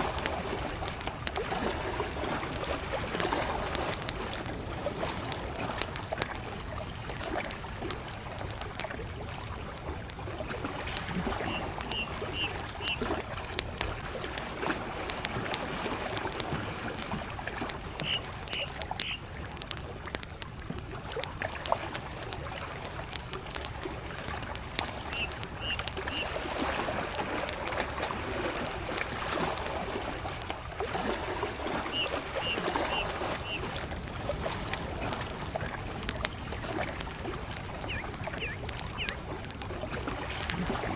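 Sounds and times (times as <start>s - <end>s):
campfire crackling and popping: 0.0s - 40.9s
gentle lake waves: 0.0s - 40.9s
distant bird calling: 11.3s - 13.2s, 17.8s - 19.4s, 24.8s - 26.6s, 31.8s - 33.8s, 37.6s - 39.3s.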